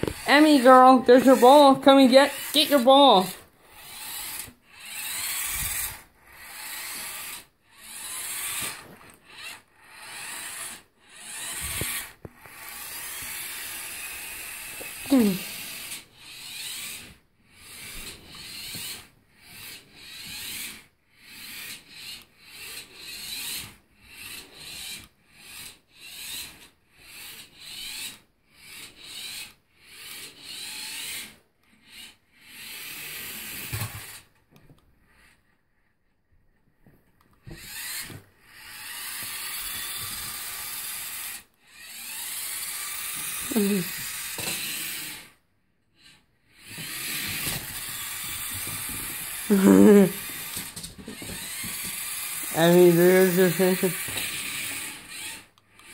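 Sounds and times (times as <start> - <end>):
toy car motor whirring: 0.0 - 35.6, 37.2 - 55.9.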